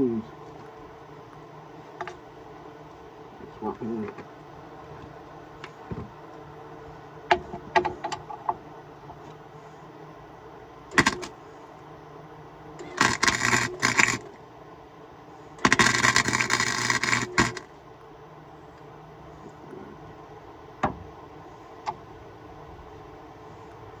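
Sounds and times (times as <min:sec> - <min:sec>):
arc welder sputtering: 0:10.9 - 0:11.4, 0:12.8 - 0:14.4, 0:15.6 - 0:17.8.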